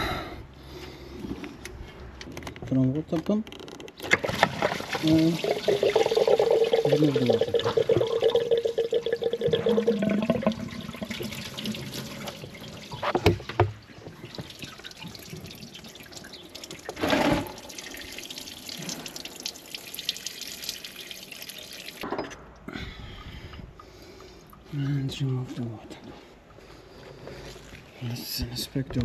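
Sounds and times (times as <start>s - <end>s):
coolant trickling and dripping: 4.0s - 25.7s.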